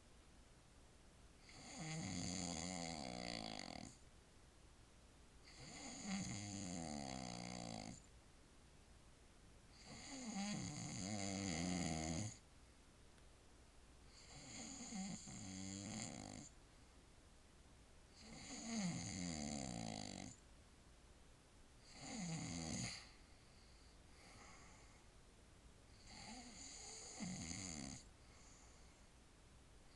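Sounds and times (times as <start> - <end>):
man snoring: 1.4 - 4.0, 5.4 - 8.0, 9.8 - 12.4, 14.2 - 16.5, 18.2 - 20.4, 21.8 - 23.2, 26.0 - 28.6
quiet breathing: 14.0 - 17.2, 21.8 - 29.9.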